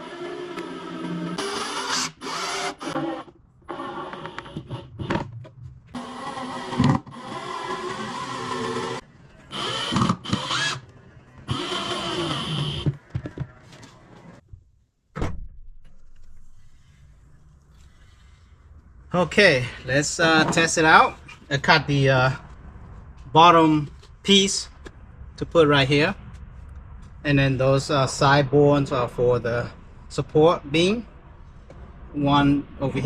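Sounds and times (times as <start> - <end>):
power tools working wood: 0.0 - 4.9, 6.0 - 10.8, 11.4 - 12.9.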